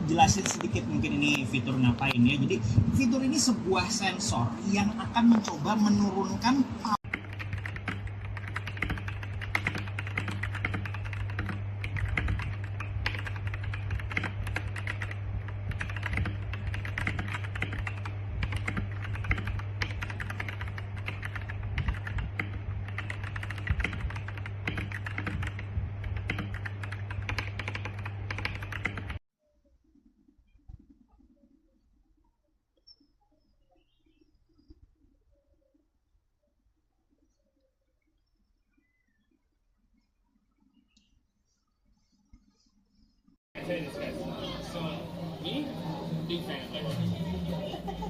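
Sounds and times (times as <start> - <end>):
steady low hum: 0.0 - 29.2, 31.8 - 48.0
fast typing on mechanical keyboard: 7.1 - 29.2.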